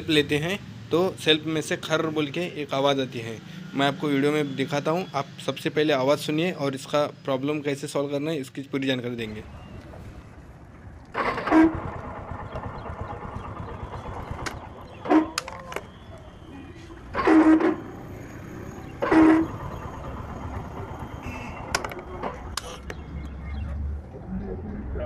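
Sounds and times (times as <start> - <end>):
motorcycle engine running: 9.4 - 23.6
harsh starter motor bursts: 11.1 - 15.4, 17.1 - 22.7.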